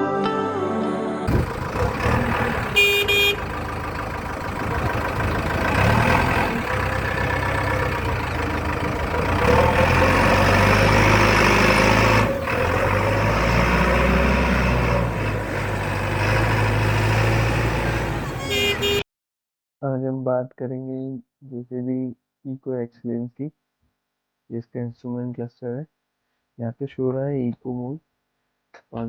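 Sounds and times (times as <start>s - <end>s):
diesel engine running: 1.3s - 19.0s.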